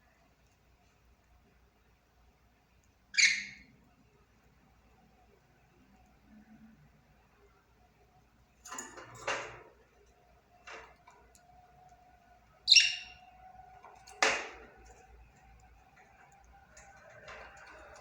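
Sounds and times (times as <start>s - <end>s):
budgerigar chirp: 3.2s - 3.7s, 12.7s - 13.2s
budgerigar chattering: 12.7s - 13.1s.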